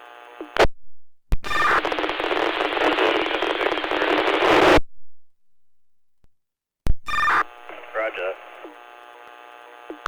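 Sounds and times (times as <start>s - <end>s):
radio static: 1.5s - 4.8s, 7.2s - 8.9s
radio squelch burst: 7.2s - 8.8s
radio click: 7.6s - 8.8s.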